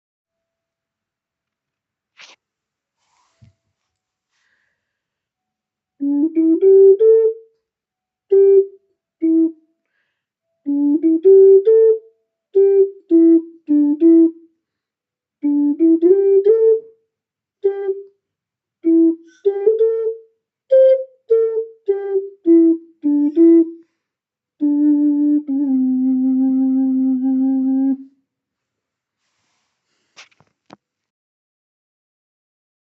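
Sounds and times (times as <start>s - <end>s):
flute-like tune: 6.0s - 7.6s, 8.3s - 9.6s, 10.6s - 14.4s, 15.4s - 17.0s, 17.6s - 18.1s, 18.8s - 23.9s, 24.6s - 28.1s.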